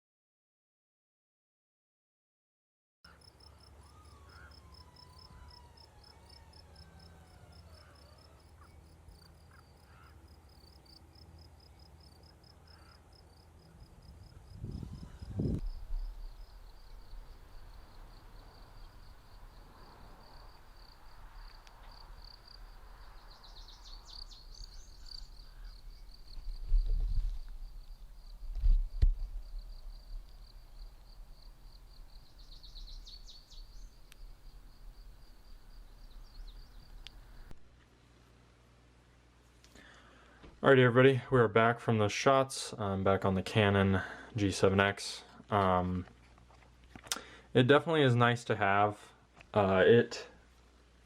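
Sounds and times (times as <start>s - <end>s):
insects chirping: 3.1s - 37.6s.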